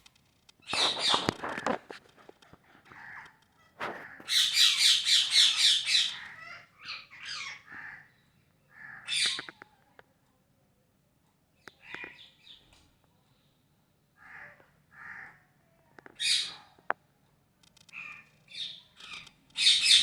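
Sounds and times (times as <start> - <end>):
parrot calling: 2.8 - 8.1.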